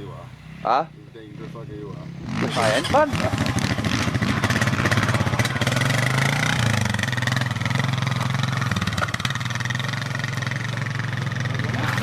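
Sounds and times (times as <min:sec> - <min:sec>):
motorbike engine idling: 0:00.0 - 0:12.0.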